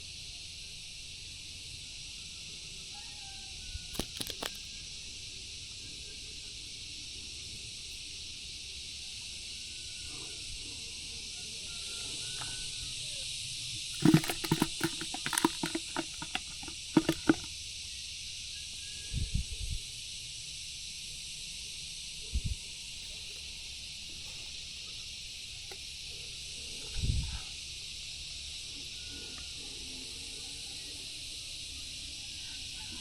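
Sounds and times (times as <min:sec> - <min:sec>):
insects hissing: 0:20.6 - 0:33.0.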